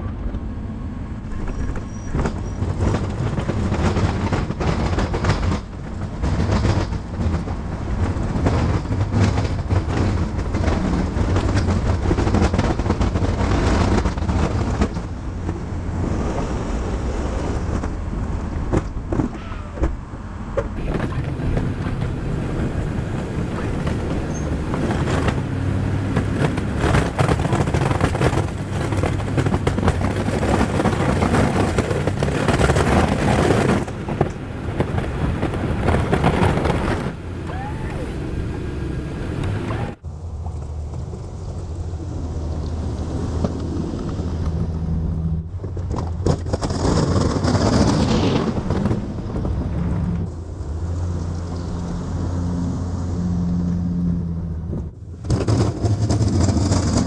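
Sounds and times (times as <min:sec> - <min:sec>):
pickup engine running under load: 0:20.8 - 0:47.8
plow scraping snow: 0:20.8 - 0:57.0.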